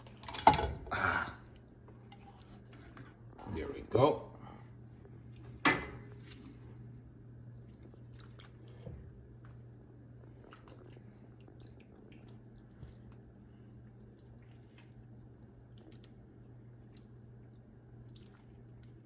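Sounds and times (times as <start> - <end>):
wet squelches and drips: 4.9 - 19.0.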